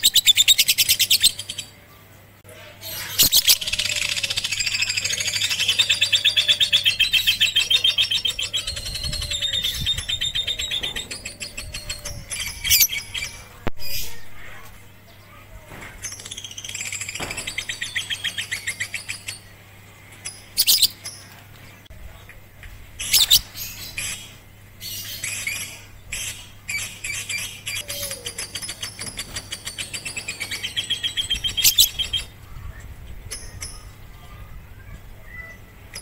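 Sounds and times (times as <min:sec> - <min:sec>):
lovebird chattering trills: 0:02.9 - 0:14.2.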